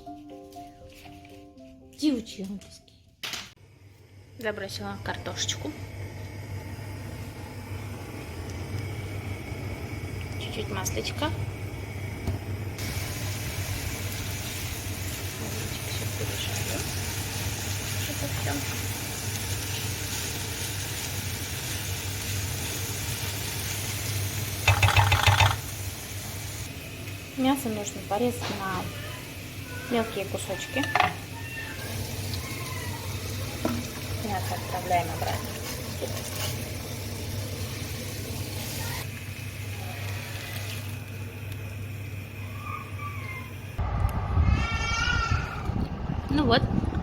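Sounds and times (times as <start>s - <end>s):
food frying in a pan: 5.0s - 43.4s
utensil clattering against pan: 24.7s - 25.6s
low hum: 43.8s - 47.0s.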